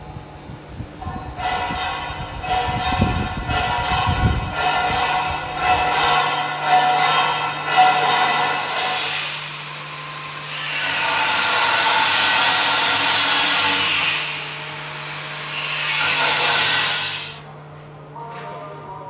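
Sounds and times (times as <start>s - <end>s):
power tool grinding: 7.9s - 17.5s.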